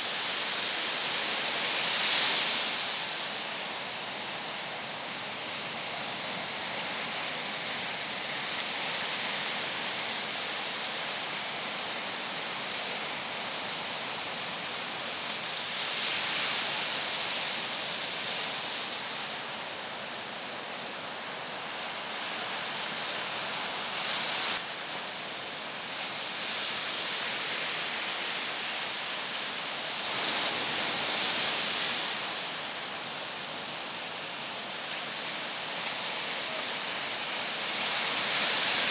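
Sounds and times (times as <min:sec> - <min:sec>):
waves breaking: 0:26.1 - 0:38.9.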